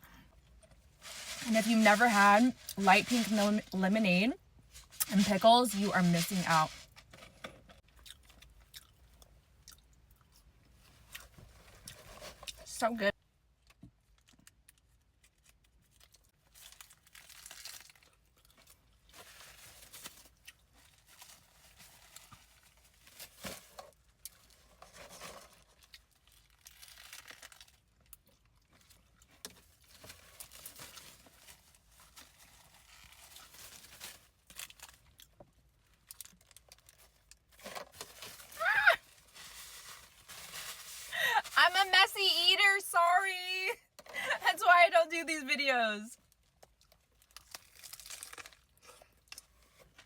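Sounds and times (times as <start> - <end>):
paper wrapper crinkling: 1.0 - 7.1, 15.4 - 27.9, 36.0 - 45.6, 46.3 - 48.8
wet chewing: 7.9 - 9.0.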